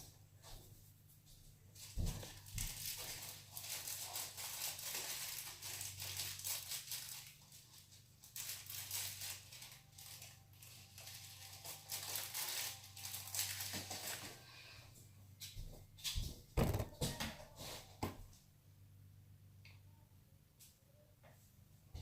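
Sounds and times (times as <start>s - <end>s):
faint low hum: 0.0s - 22.0s
slime and plastic rustling: 1.7s - 14.6s.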